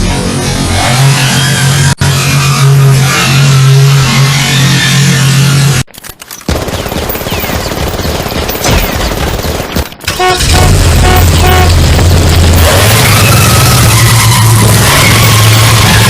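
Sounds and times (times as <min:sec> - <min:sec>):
rapid crackling: 0:05.9 - 0:16.0
distorted car horn: 0:10.1 - 0:12.0.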